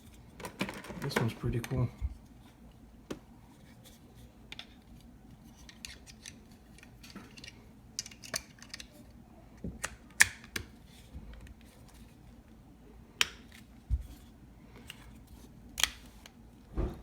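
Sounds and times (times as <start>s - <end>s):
plastic parts clicking: 5.6s - 9.0s.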